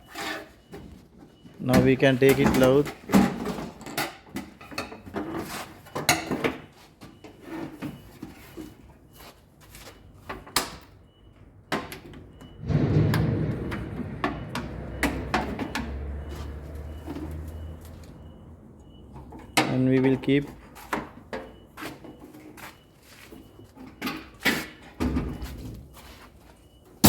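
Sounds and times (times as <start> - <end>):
scraping rumble: 12.6 - 18.4.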